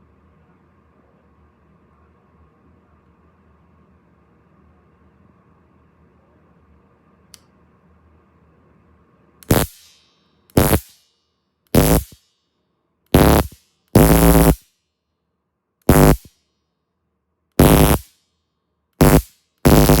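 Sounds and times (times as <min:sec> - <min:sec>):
stun gun electric buzzing crackle: 0:09.4 - 0:11.0, 0:11.7 - 0:12.2, 0:13.1 - 0:14.7, 0:15.9 - 0:16.3, 0:17.6 - 0:18.1, 0:19.0 - 0:20.0.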